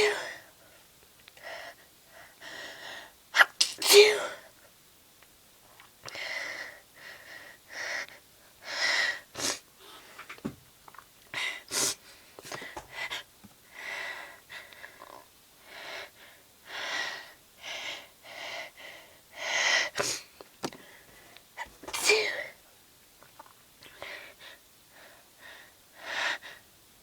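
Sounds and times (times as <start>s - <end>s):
woman sniffling: 21.6s - 22.6s.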